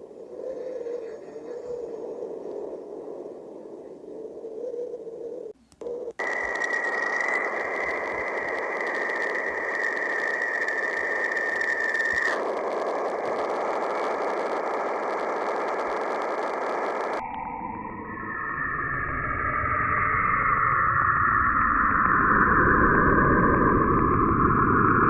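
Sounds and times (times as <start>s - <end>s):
static hiss: 0.0s - 17.2s
high steady tone: 5.6s - 19.3s.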